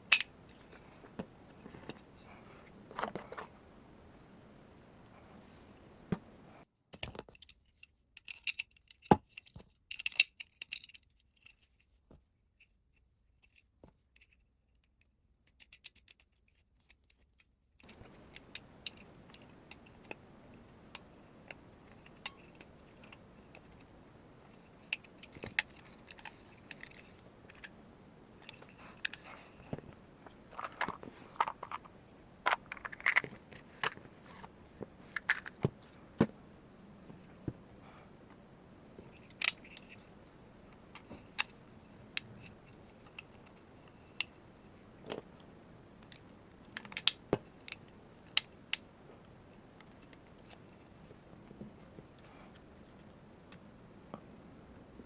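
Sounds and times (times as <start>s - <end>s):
small metal parts clicking and scraping: 6.9s - 20.2s, 24.6s - 27.7s.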